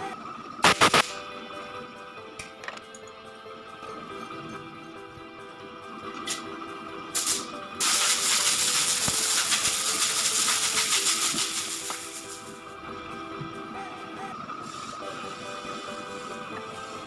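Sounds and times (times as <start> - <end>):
background music: 0.0 - 17.0
power tool rasping hiss: 0.6 - 1.2, 7.1 - 12.6, 14.2 - 17.0.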